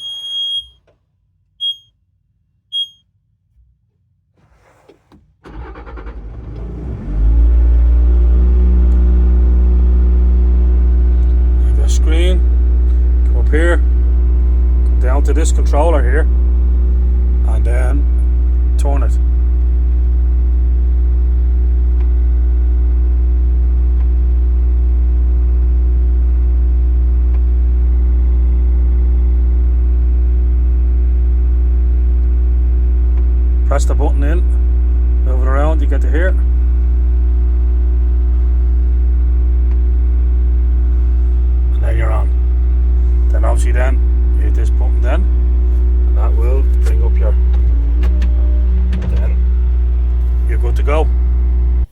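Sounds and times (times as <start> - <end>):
diesel engine running: 0.0 - 0.8, 2.7 - 3.0, 4.5 - 51.9
diesel engine cranking on starter: 4.4 - 19.7, 33.2 - 51.9.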